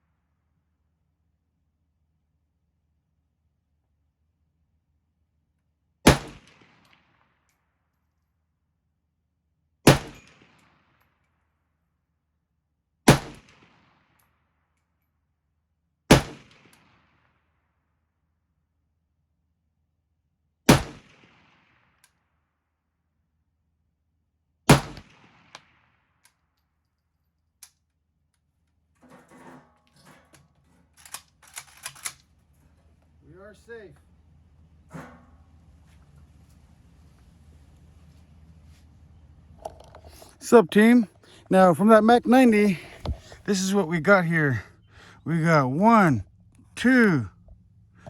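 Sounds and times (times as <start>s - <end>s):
rifle shots with echo: 6.0s - 7.1s, 9.9s - 10.8s, 13.1s - 14.0s, 16.1s - 17.2s, 20.7s - 21.8s, 24.7s - 25.8s.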